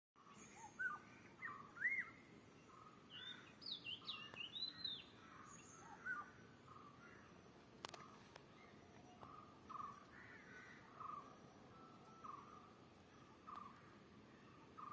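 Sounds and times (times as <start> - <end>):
birds chirping and whistling: 0.2 - 7.0, 7.9 - 10.1, 10.8 - 14.9
faint steady hiss: 0.2 - 14.9
sharp clicks: 7.8 - 8.5.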